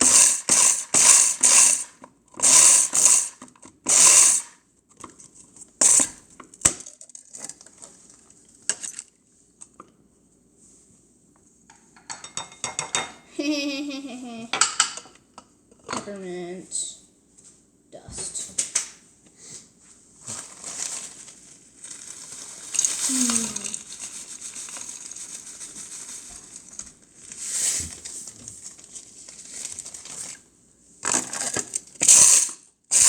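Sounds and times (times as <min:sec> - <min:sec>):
blender crushing hard candies: 0:00.0 - 0:04.6, 0:05.8 - 0:06.2, 0:21.8 - 0:25.4, 0:31.0 - 0:33.0
candy pieces clicking: 0:22.8 - 0:24.0.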